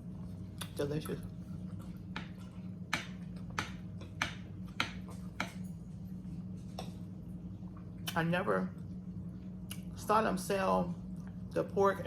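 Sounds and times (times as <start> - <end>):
steady low hum: 0.0 - 12.0
person chewing food: 0.1 - 7.0.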